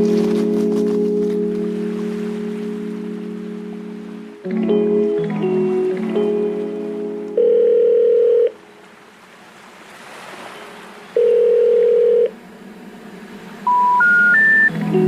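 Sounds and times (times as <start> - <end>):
steady telephone line tone: 6.3 - 8.6, 11.2 - 12.4, 13.7 - 14.8
rising three-tone telephone signal: 7.4 - 8.6, 11.2 - 12.3, 13.7 - 14.7.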